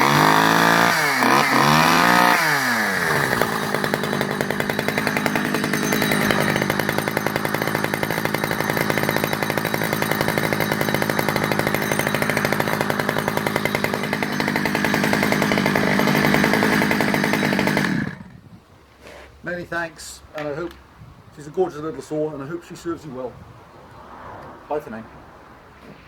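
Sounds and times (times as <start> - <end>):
chainsaw running at low speed: 0.0 - 18.6.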